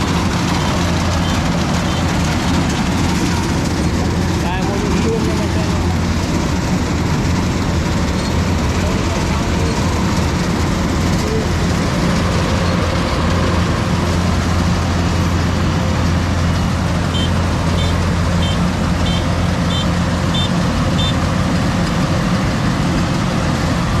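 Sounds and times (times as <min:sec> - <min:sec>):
heavy engine running: 0:00.0 - 0:24.0.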